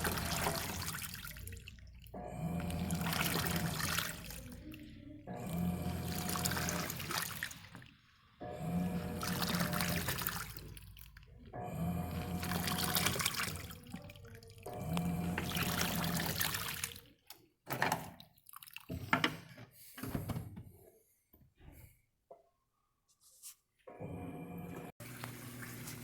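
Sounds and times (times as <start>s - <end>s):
washing machine motor humming: 0.0s - 17.2s, 23.9s - 26.0s
water sloshing: 0.0s - 17.4s, 18.0s - 19.2s.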